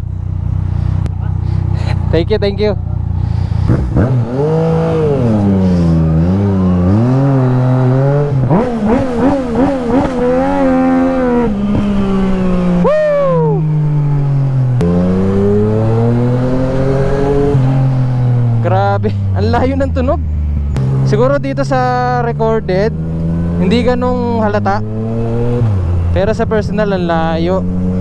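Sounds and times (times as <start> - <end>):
motorcycle engine revving: 0.0 - 28.0.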